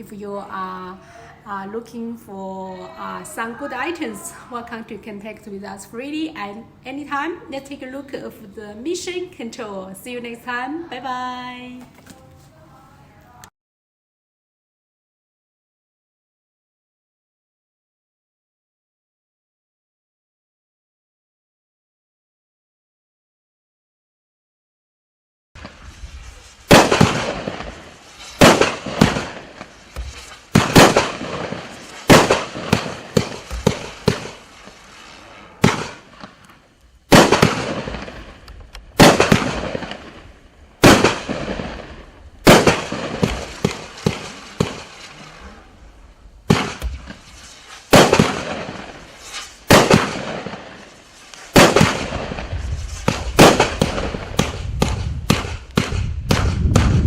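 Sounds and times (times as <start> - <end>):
firework cake bangs: 25.6 - 36.4, 37.1 - 38.3, 39.0 - 40.2, 40.8 - 45.4, 46.4 - 57.0.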